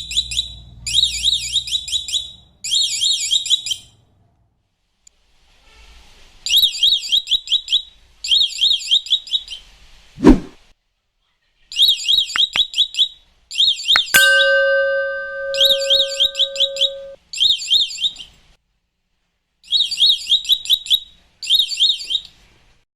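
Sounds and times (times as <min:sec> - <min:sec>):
steady lower tone: 0:14.1 - 0:17.2.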